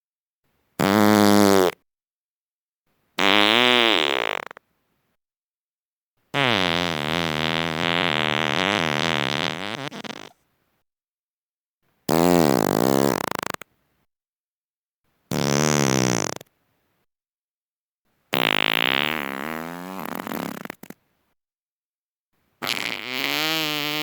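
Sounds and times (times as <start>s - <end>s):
person farting: 0.8s - 1.8s, 3.2s - 4.6s, 6.3s - 10.4s, 12.1s - 13.7s, 15.3s - 16.5s, 18.3s - 21.0s, 22.6s - 24.0s.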